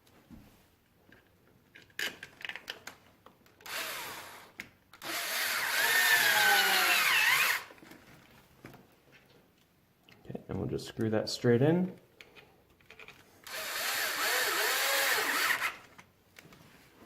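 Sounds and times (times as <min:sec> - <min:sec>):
power drill whining: 0:03.6 - 0:07.8, 0:13.4 - 0:15.9.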